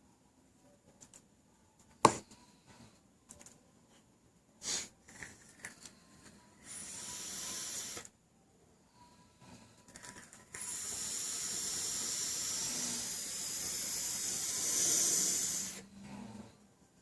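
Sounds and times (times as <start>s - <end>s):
person snoring: 6.6s - 8.0s, 10.6s - 16.6s.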